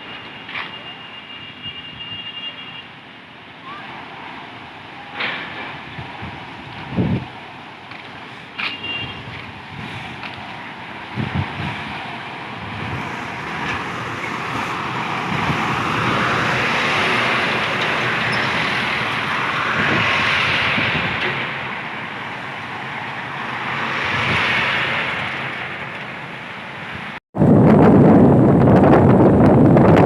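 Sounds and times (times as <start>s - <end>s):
gusty wind: 3.4s - 30.0s
heavy rain: 9.2s - 27.2s.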